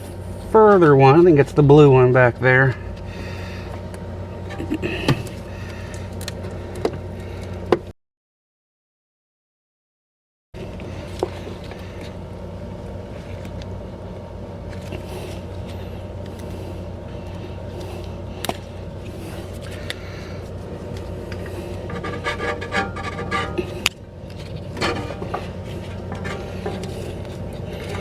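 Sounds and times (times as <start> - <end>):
steady low hum: 0.0 - 7.9, 10.6 - 28.0
light scraping: 20.9 - 28.0.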